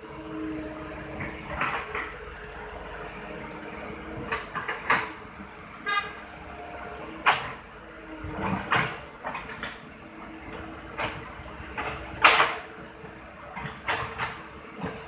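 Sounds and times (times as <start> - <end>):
short horn-like beep: 5.8 - 6.2.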